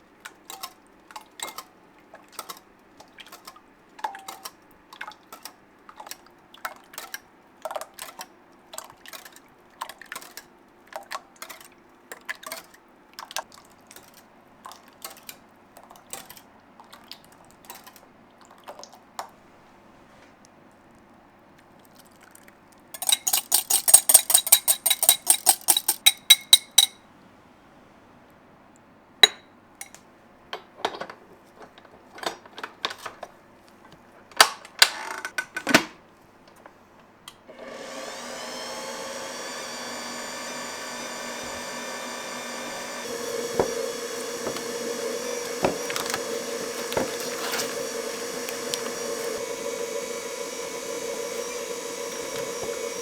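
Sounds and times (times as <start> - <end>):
rapid ringing taps: 23.0 - 27.0
scattered clicks and knocks: 23.0 - 27.0
small electric motor running: 37.5 - 53.0.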